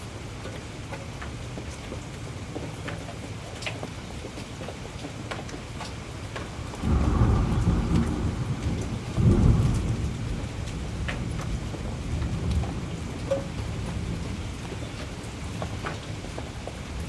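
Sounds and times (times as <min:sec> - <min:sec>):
heavy rain: 0:00.0 - 0:17.0
thunder rumble: 0:06.5 - 0:16.0.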